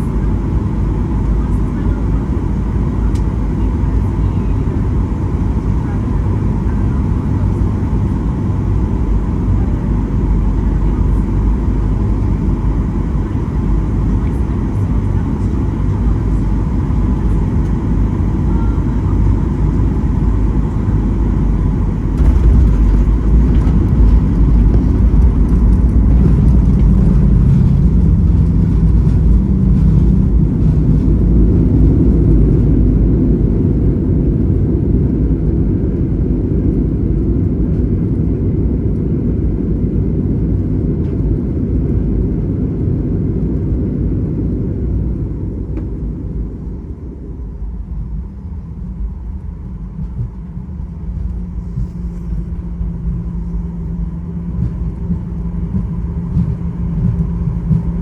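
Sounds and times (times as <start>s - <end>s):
aircraft cabin rumble on landing: 0.0s - 58.0s.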